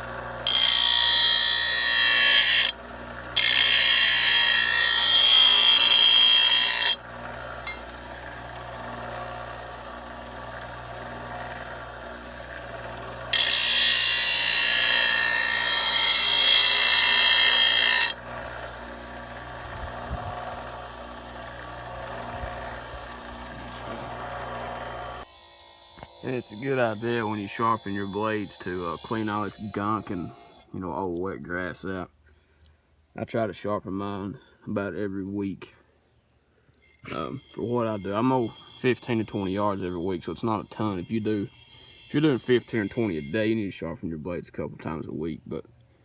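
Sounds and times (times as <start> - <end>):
grinder sharpening metal blade: 0.4 - 2.8, 3.4 - 7.0, 13.3 - 18.2, 25.2 - 30.7, 36.8 - 43.4.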